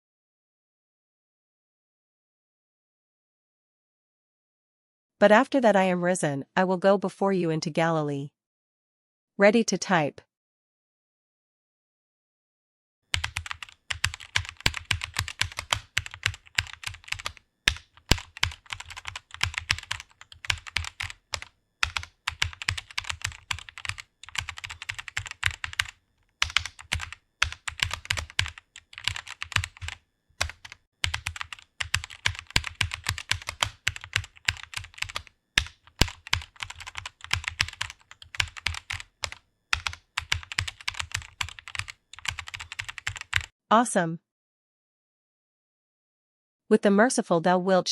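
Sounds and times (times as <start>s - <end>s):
computer keyboard typing: 13.1s - 43.5s.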